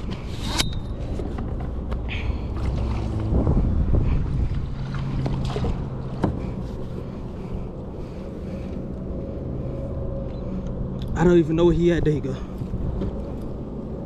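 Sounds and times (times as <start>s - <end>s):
wind buffeting microphone: 0.0s - 14.0s
water and kayak hull noise: 0.9s - 9.6s.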